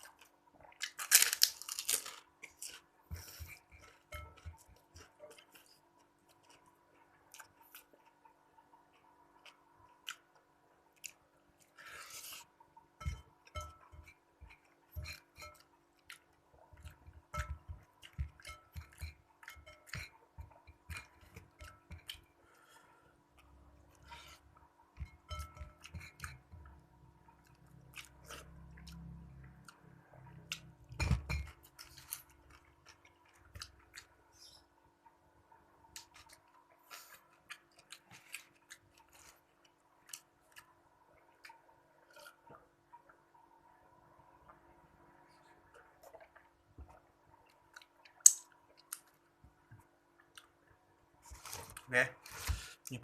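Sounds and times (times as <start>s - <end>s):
person chewing: 0.0s - 12.5s, 13.4s - 26.8s, 27.4s - 30.7s, 31.4s - 34.2s, 36.0s - 42.4s, 45.8s - 49.2s, 50.2s - 50.6s.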